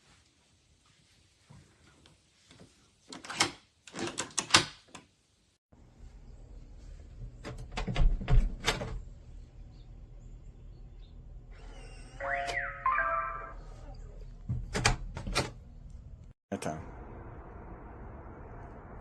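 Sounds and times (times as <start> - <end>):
low hum: 5.8 - 19.0
door hardware clicks and knocks: 7.4 - 9.0, 14.5 - 15.6.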